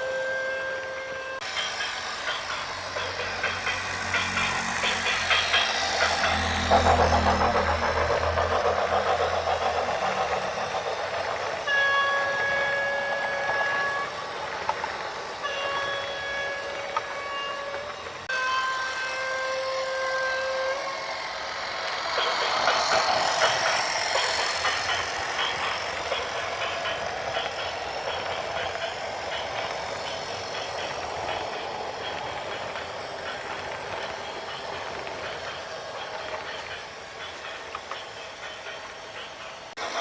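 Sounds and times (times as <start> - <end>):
heavy vehicle rumbling: 2.6 - 11.6.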